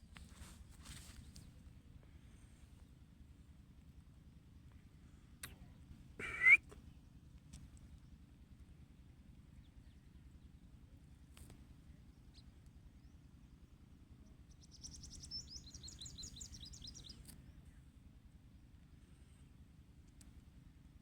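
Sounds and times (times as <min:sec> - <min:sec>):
bird twittering: 0:06.2 - 0:06.7.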